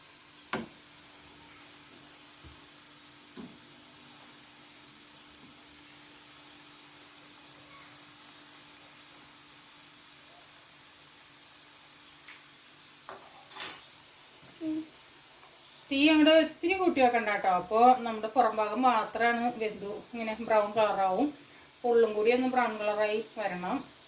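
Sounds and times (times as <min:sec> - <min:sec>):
dough sizzling in hot oil: 0:00.0 - 0:24.0
sharp clink: 0:13.1 - 0:13.8.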